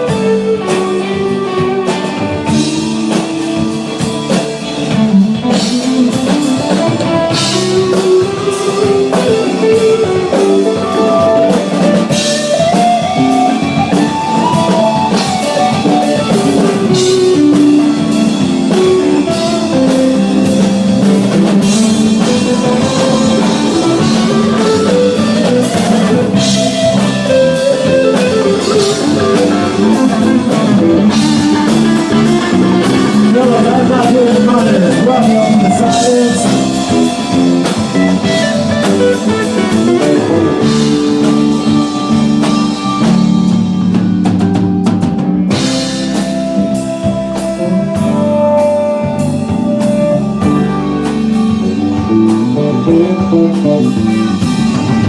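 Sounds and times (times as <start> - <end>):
drum kit: 0.0 - 55.0
electric guitar: 0.0 - 55.0.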